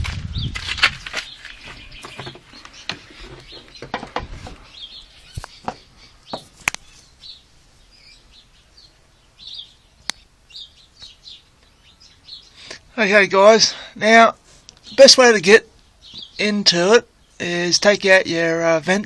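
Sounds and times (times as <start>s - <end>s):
small birds chirping: 0.2s - 19.0s
handling clicks and knocks: 2.0s - 4.7s.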